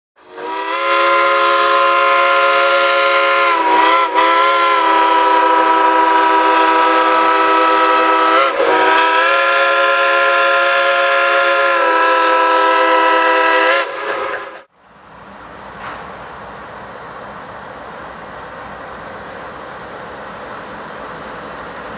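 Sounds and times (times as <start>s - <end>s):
locomotive air horn: 0.2s - 14.6s.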